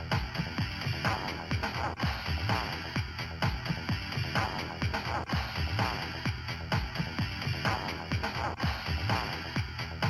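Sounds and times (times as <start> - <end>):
electronic dance ringtone: 0.0 - 10.0
kick drum beat: 0.0 - 10.0.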